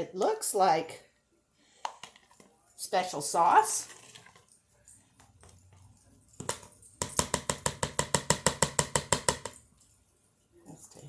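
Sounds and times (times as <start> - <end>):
spoon stirring in a bowl: 1.7 - 2.8, 3.5 - 11.0
spoon knocking bowl: 6.4 - 9.7.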